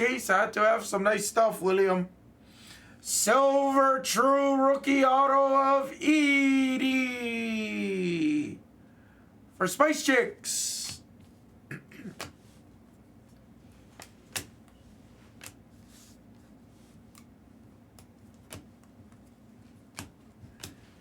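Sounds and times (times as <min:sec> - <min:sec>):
cards clicking and tapping: 0:12.1 - 0:12.6, 0:13.3 - 0:21.0.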